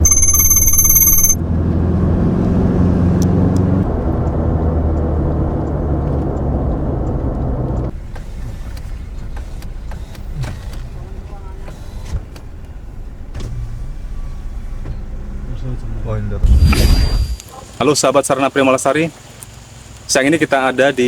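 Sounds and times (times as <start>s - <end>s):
electronic chime: 0.0s - 1.4s
motor vehicle engine humming: 0.0s - 9.7s.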